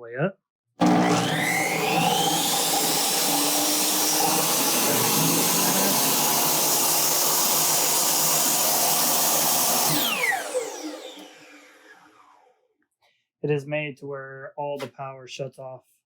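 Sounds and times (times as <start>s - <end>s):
table saw motor and blade whine: 0.8s - 12.4s.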